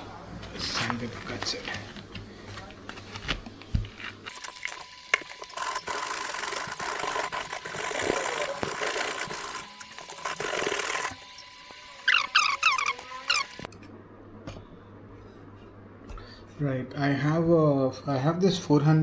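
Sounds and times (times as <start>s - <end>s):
short high squeaks: 12.0s - 13.7s.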